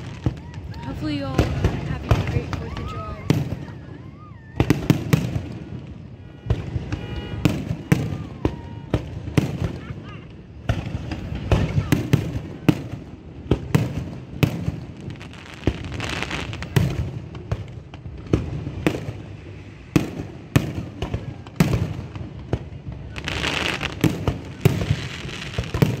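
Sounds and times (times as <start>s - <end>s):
fireworks bangs: 0.0s - 26.0s
fireworks crackle and hiss: 0.0s - 26.0s.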